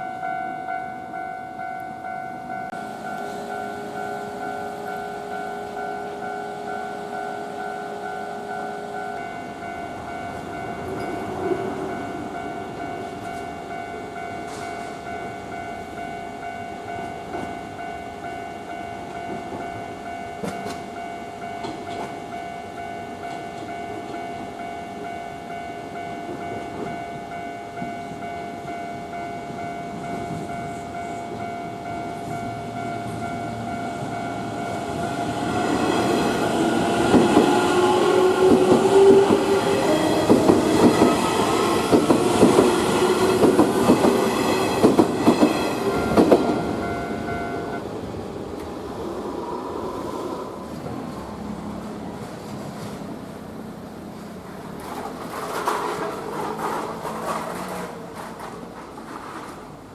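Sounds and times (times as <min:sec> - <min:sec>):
level crossing alarm ringing: 0:00.0 - 0:47.8
train rumble and wheel noise: 0:00.0 - 0:59.9.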